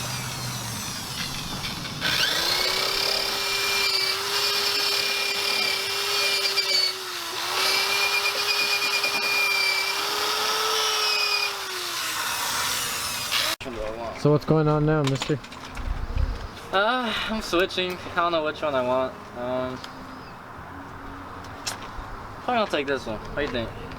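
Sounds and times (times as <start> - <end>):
power tool grinding metal: 0.0 - 13.6.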